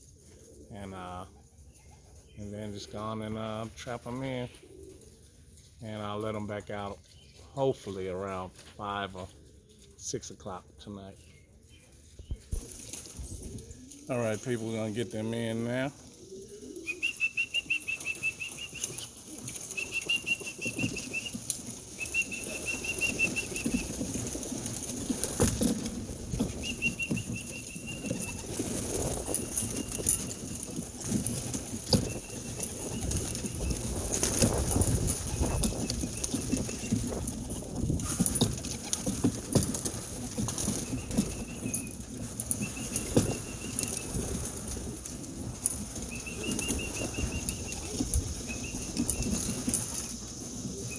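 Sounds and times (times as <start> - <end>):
pigeons flapping wings: 12.3 - 15.0, 15.6 - 50.9.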